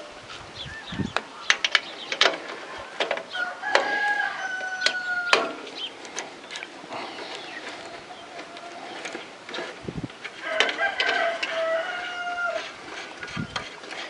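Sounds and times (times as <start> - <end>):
ratchet clicks: 4.6 - 14.0
sharp metal knocks: 4.8 - 5.9.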